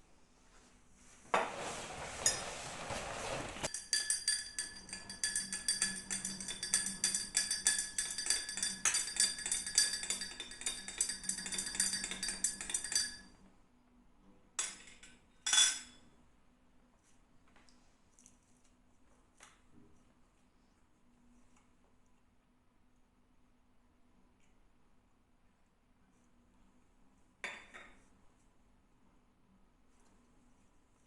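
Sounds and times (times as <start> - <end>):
metal utensil clinking against dish: 3.7 - 13.3.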